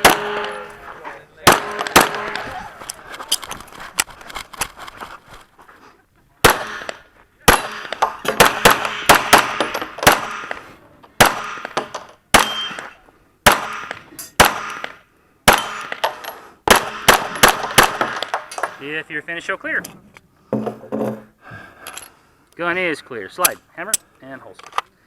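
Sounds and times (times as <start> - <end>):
pistol shots: 0.0 - 0.7, 1.4 - 2.4, 6.4 - 10.6, 11.2 - 18.4
steel targets ringing: 0.0 - 0.9, 12.4 - 13.0.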